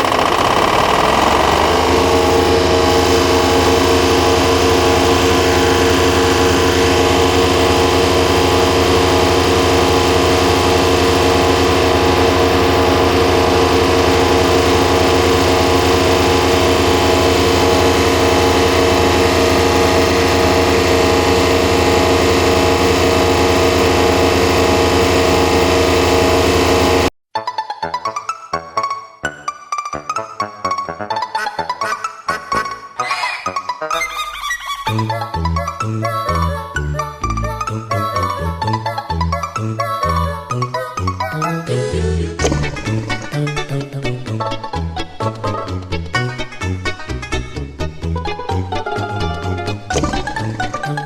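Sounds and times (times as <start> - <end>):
diesel engine running: 0.0 - 27.1.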